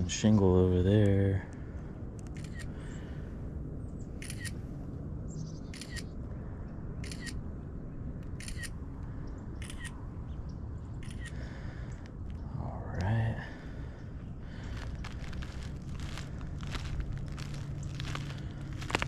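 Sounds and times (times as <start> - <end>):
camera shutter clicks: 4.2 - 4.6, 5.7 - 6.1, 7.0 - 7.4, 8.3 - 8.8, 9.6 - 10.0, 11.0 - 11.4.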